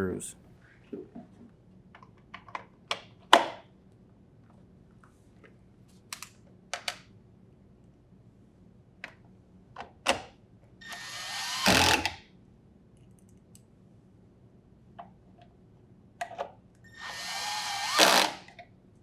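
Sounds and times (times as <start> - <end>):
drill driver driving screw: 10.8 - 12.2, 17.0 - 18.6.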